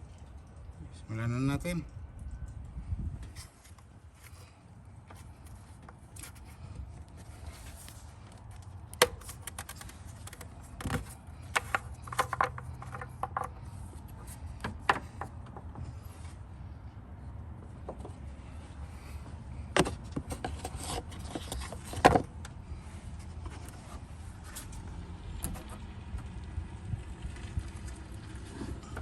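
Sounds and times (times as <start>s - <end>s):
clicks and knocks of hand work: 7.6s - 16.0s.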